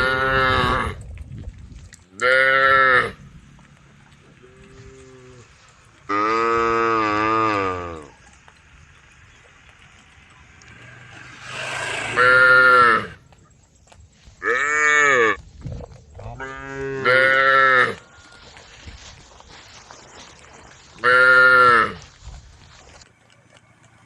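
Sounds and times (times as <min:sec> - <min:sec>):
cows mooing: 0:00.0 - 0:01.0, 0:02.2 - 0:03.2, 0:04.2 - 0:08.2, 0:10.4 - 0:13.2, 0:14.4 - 0:15.4, 0:16.4 - 0:18.0, 0:21.0 - 0:22.1.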